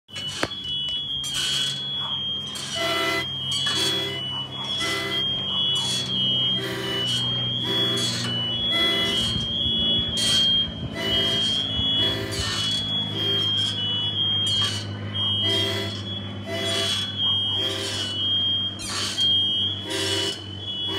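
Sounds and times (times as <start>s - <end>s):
fire alarm tone: 0.1s - 20.9s
harmonica short notes: 11.0s - 13.5s.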